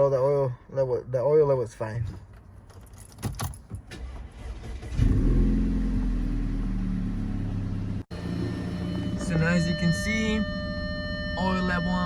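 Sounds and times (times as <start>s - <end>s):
car engine starting and idling: 3.0s - 11.2s.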